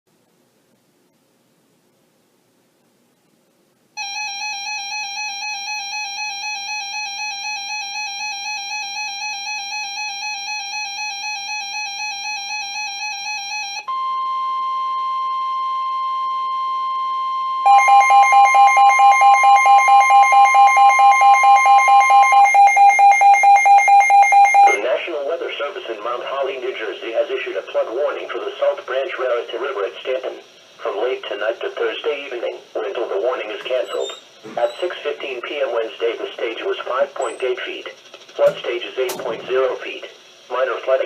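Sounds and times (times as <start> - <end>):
steady high alarm tone: 4.0 - 24.9, 33.7 - 35.0
rapid alarm beeping: 5.4 - 24.9, 33.6 - 35.0, 37.2 - 38.6
warbling alert alarm: 17.5 - 24.9, 33.7 - 35.0.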